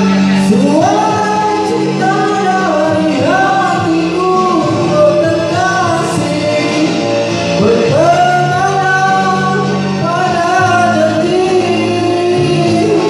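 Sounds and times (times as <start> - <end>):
instrumental backing: 0.0 - 13.0
person singing: 0.0 - 13.0.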